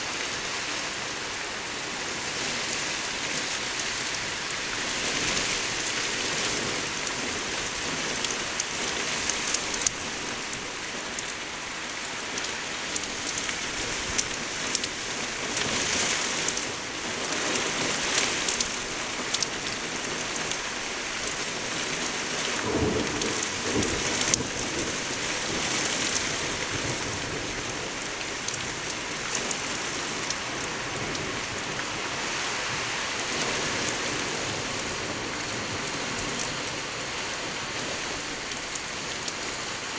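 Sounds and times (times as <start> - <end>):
rain falling: 0.0 - 39.9
thunder rolling: 22.6 - 27.3.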